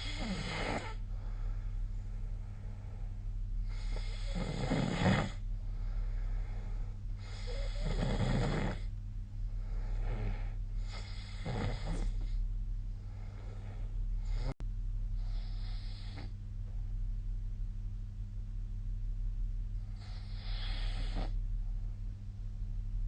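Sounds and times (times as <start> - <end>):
person snoring: 0.0 - 1.6, 3.6 - 8.9, 9.6 - 12.4, 13.1 - 14.6, 20.0 - 21.4
steady low hum: 0.0 - 23.0.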